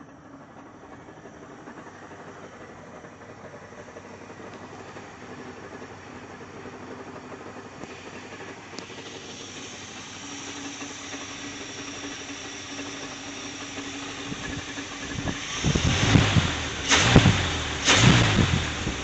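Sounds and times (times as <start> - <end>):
pickup truck idling with rattle: 0.0 - 19.0.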